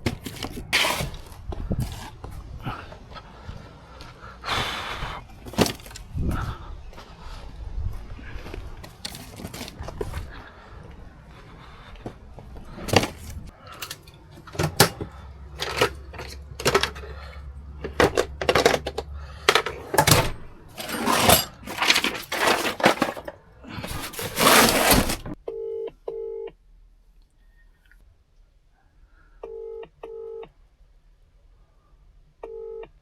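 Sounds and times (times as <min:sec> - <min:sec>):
rustling: 0:00.0 - 0:02.4, 0:05.2 - 0:06.2, 0:08.0 - 0:17.2, 0:18.6 - 0:25.4.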